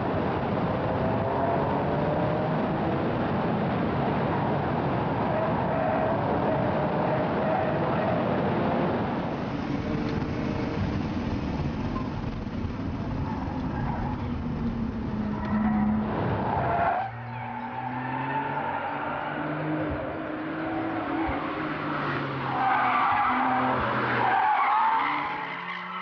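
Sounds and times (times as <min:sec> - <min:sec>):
road and wind noise: 0:00.0 - 0:26.0
sports car engine accelerating: 0:00.7 - 0:03.6, 0:04.2 - 0:17.8.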